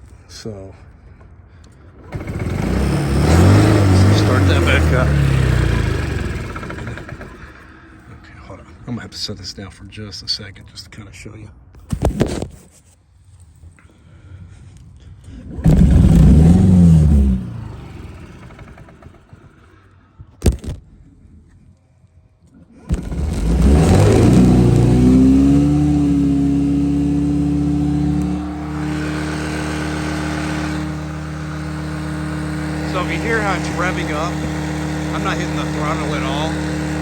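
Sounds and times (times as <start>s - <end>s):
scooter engine revving: 2.0s - 7.9s, 15.5s - 19.7s, 22.8s - 37.0s.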